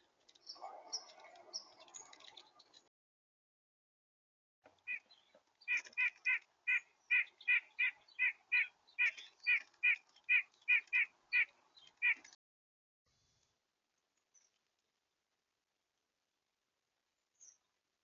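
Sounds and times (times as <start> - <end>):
woodpecker calling: 4.8 - 12.3.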